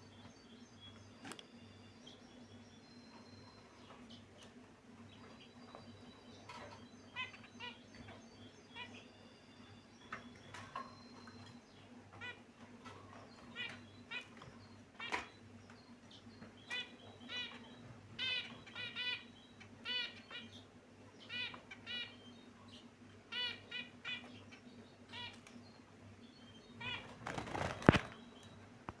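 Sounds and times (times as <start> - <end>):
finches chirping: 0.0 - 28.7
wings flapping: 26.8 - 28.2.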